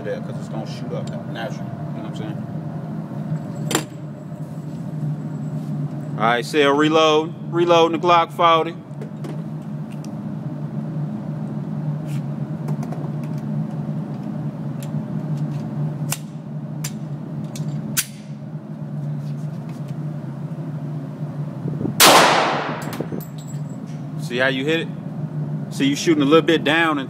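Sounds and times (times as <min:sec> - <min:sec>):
ventilation hum: 0:00.0 - 0:27.0
pistol shot: 0:22.0 - 0:23.0
pistol handling clicks and knocks: 0:22.7 - 0:23.7.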